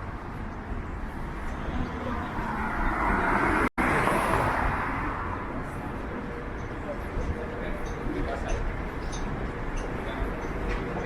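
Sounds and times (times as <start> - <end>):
car passing by: 2.1 - 5.7.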